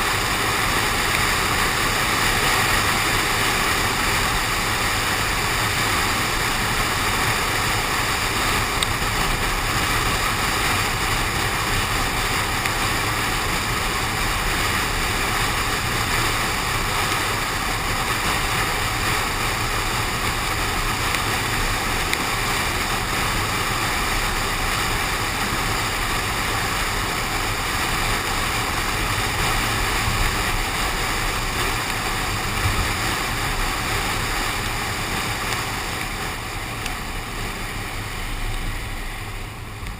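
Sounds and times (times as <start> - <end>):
car road noise: 0.0 - 39.9
wind and rain spray rushing: 0.0 - 39.9.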